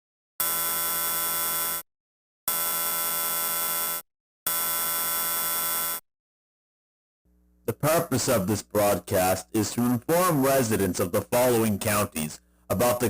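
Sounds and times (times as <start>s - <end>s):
harsh buzzing electronic tones: 0.4s - 1.9s, 2.5s - 6.0s.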